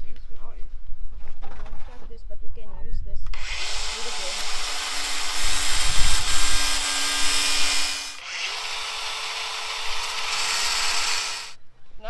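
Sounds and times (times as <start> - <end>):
electric grinder cutting metal: 3.4 - 11.6.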